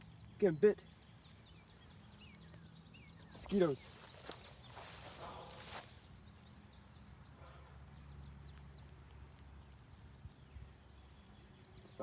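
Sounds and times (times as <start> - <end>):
rustling: 3.7 - 6.1.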